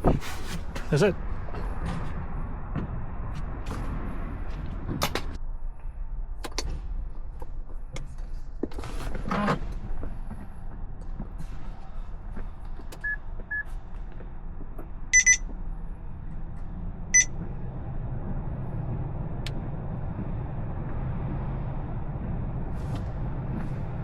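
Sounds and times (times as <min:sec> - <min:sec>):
steady low hum: 0:00.0 - 0:24.0
car electronic beeps: 0:13.0 - 0:13.7, 0:15.1 - 0:15.4.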